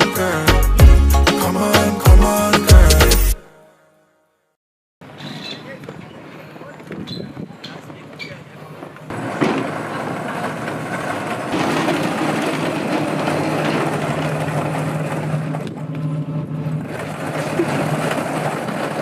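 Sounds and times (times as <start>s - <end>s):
low hum: 11.3s - 18.7s.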